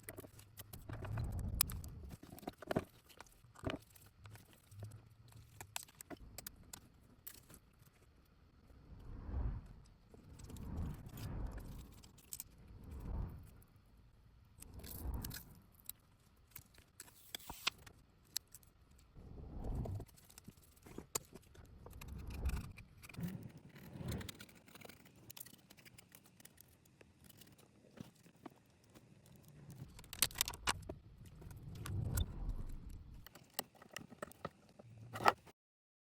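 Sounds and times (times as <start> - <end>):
small repair tools clicking and scraping: 14.6 - 19.1, 19.8 - 35.5.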